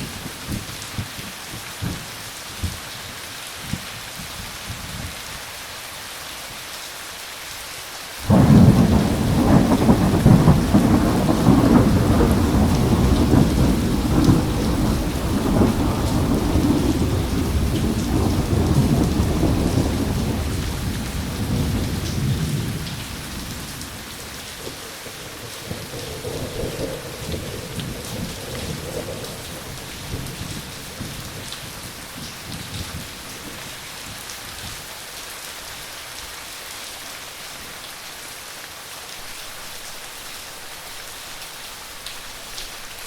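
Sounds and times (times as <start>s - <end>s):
steady rain: 0.0s - 43.0s
thunderclap rumbling: 8.2s - 33.7s.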